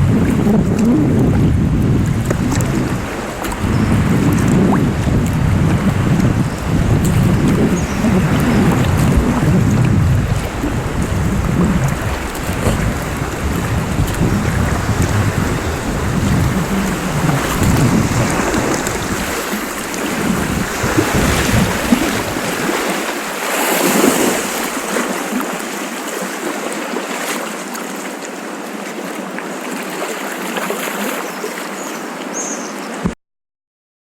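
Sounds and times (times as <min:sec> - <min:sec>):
wind rumbling on microphone: 0:00.0 - 0:26.2
sea waves washing: 0:00.0 - 0:32.9.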